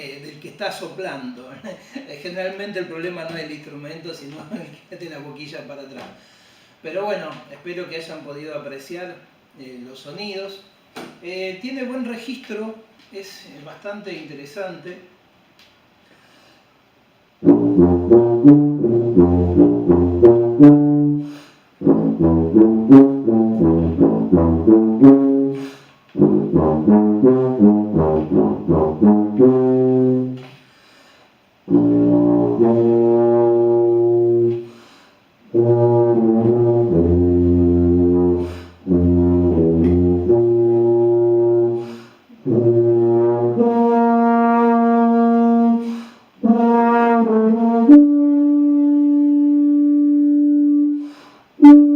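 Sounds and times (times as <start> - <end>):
tuba playing solo: 17.4 - 30.6, 31.6 - 34.8, 35.4 - 51.9.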